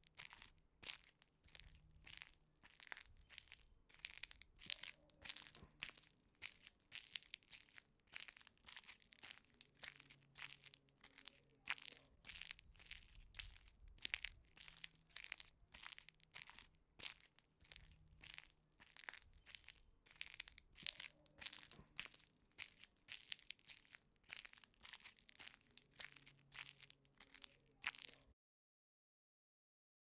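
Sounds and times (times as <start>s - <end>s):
footsteps crunching on gravel: 0.1s - 28.3s.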